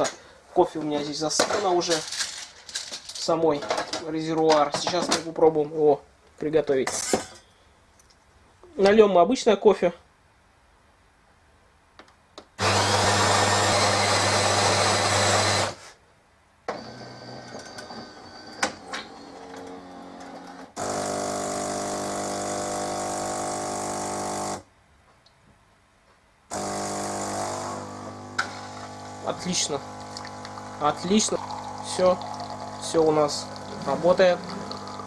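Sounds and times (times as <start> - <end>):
coffee grinder running: 12.6 - 15.8, 19.1 - 24.6, 26.5 - 35.0
brewing unit whirring and clicking: 16.7 - 24.6, 26.5 - 35.0
water pump humming: 16.8 - 24.6, 26.5 - 35.0.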